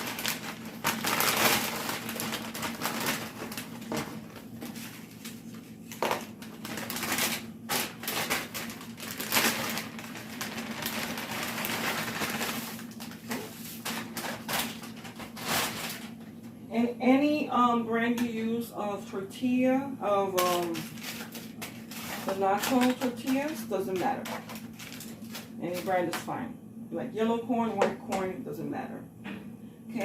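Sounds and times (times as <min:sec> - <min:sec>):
tortilla chips crunching and rustling: 0:00.0 - 0:16.2, 0:20.4 - 0:25.9
faint steady hum: 0:00.0 - 0:30.0.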